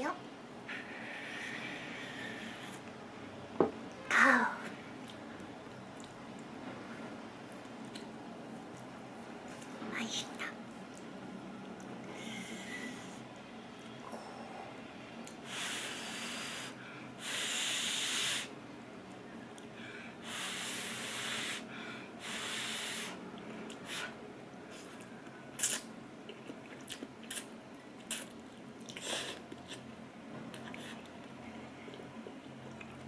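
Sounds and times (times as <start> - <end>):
mouth clicks and chewing smacks: 5.0 - 6.5, 25.0 - 29.8.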